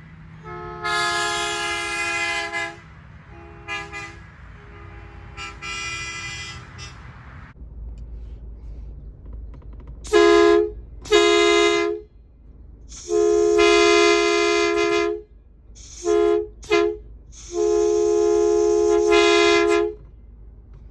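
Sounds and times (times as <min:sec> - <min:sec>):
truck horn blasts: 0:00.4 - 0:07.3, 0:10.1 - 0:12.1, 0:12.9 - 0:20.1.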